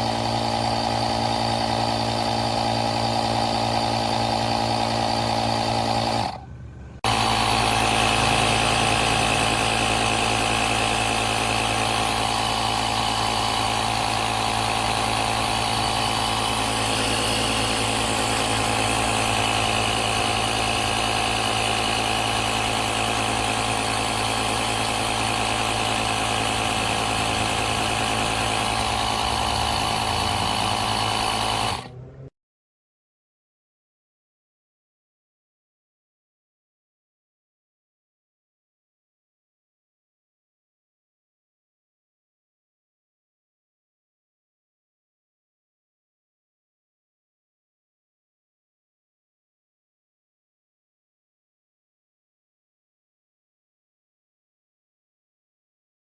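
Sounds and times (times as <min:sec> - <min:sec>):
tire inflator compressor running: 0:00.0 - 0:32.3.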